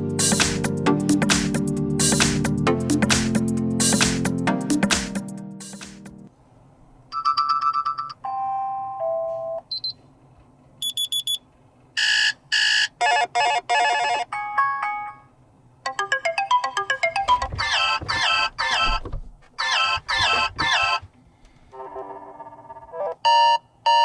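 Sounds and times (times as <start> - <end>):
electronic alarm chimes and beeps: 10.8 - 11.4.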